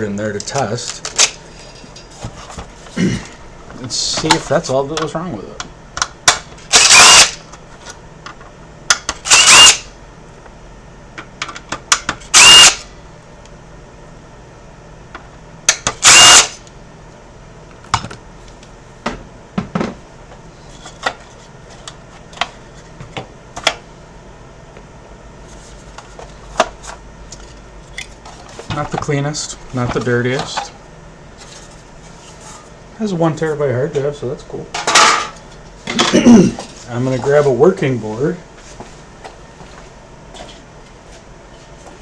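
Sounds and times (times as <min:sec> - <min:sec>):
impact driver whining: 0:06.3 - 0:07.5, 0:09.2 - 0:09.9, 0:12.2 - 0:12.9, 0:15.7 - 0:16.6.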